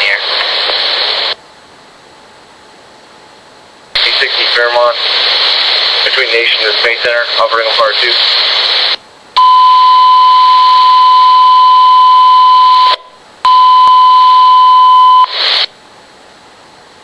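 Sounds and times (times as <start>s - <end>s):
burst of static: 0.0s - 1.4s, 4.0s - 9.0s, 15.0s - 15.7s
radio hiss: 0.0s - 1.4s, 3.9s - 9.0s, 15.0s - 15.7s.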